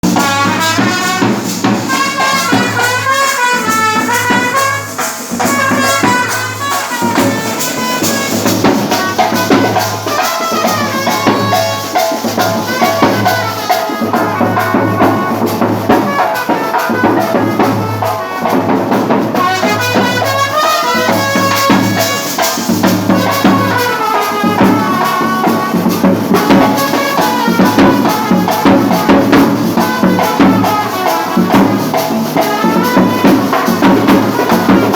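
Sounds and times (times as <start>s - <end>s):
jingling rattling percussion: 0.0s - 18.2s
brass: 0.0s - 34.9s
drums beat: 0.0s - 34.9s.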